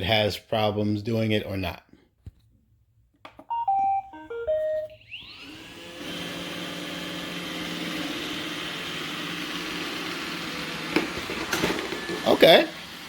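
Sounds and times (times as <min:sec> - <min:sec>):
tune of short beeps: 0:03.5 - 0:05.2
robot vacuum motor whine: 0:05.0 - 0:13.0.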